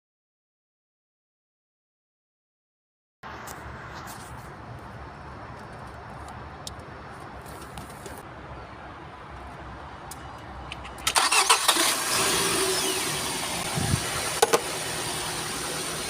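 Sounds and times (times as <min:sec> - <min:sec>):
car engine cranking and idling: 0:10.7 - 0:16.0.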